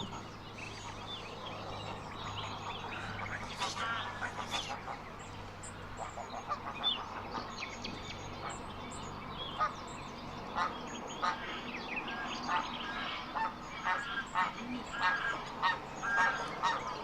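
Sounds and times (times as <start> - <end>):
geese and ducks calling: 0.0 - 17.0
small birds chirping: 0.0 - 17.0.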